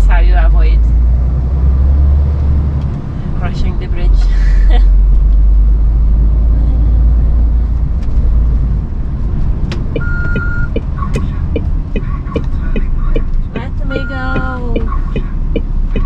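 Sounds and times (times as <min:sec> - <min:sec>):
diesel engine rumbling: 0:00.0 - 0:16.0
regular ticking: 0:07.9 - 0:16.0
short beep: 0:10.0 - 0:10.7.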